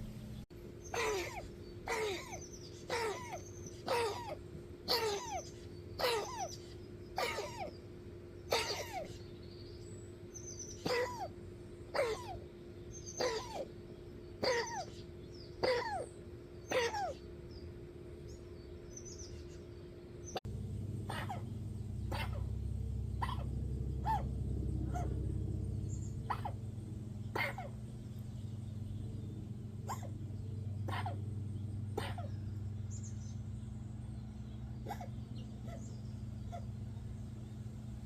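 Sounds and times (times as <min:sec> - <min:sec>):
steady low hum: 0:00.0 - 0:38.0
animal wheezing squeakily: 0:01.0 - 0:06.5, 0:08.5 - 0:09.2, 0:10.8 - 0:11.4, 0:13.2 - 0:13.7, 0:14.4 - 0:14.9.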